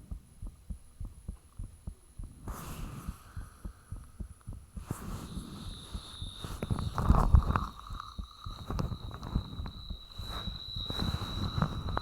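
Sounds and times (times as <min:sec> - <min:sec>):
heartbeat thumps: 0:00.0 - 0:12.0
faint high-pitched tone: 0:05.1 - 0:12.0.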